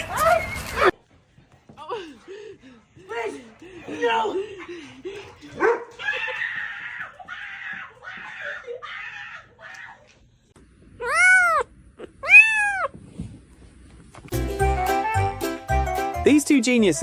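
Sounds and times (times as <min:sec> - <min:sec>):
cat meowing: 0:11.0 - 0:13.0.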